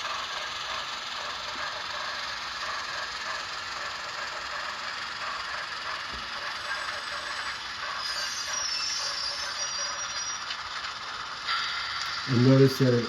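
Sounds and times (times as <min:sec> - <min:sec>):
hissing engine and rail sound: 0:00.0 - 0:13.0
faint high squealing tones: 0:06.4 - 0:12.8.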